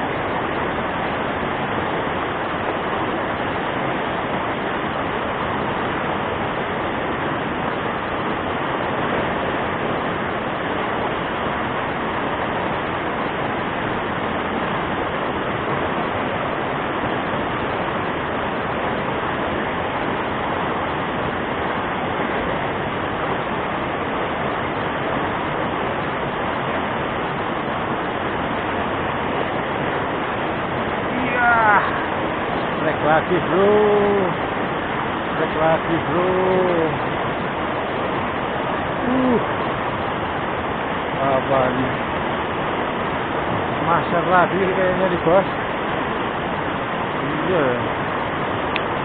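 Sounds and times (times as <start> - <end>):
river rushing: 0.0 - 49.0.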